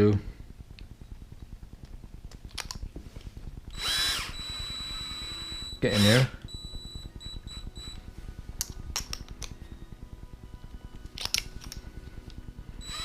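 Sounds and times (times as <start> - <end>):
low rumble: 0.0 - 5.4.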